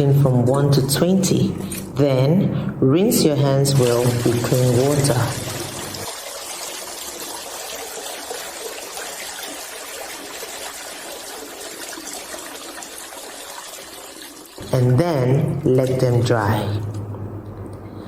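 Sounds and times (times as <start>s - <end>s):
running water pouring: 3.6s - 16.1s.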